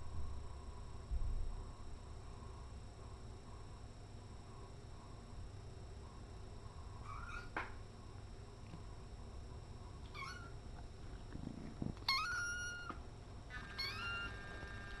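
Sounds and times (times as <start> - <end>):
kitten meowing: 10.1 - 10.5, 12.0 - 14.3.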